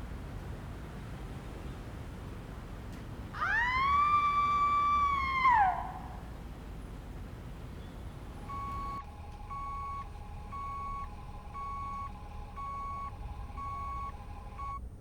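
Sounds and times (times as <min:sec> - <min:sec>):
faint continuous hum: 0:00.0 - 0:15.0
electronic beeps: 0:08.5 - 0:14.8.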